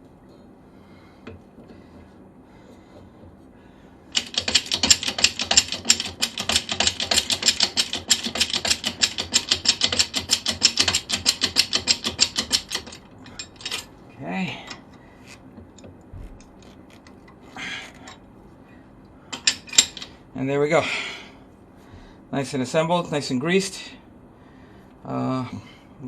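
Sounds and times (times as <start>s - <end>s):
rapid mechanical clicking of tool: 4.1s - 13.8s.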